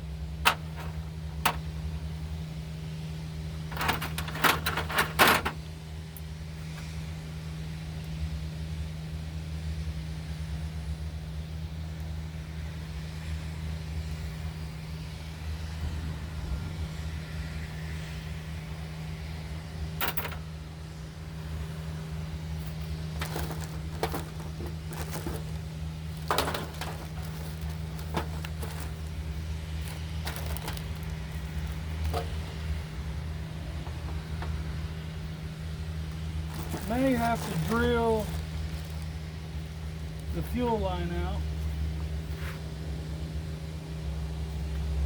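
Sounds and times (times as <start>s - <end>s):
steady low hum: 0.0s - 45.0s
clicks and light knocks of parts: 0.4s - 1.8s, 3.7s - 5.6s, 20.0s - 20.5s, 22.6s - 29.2s, 29.8s - 32.5s.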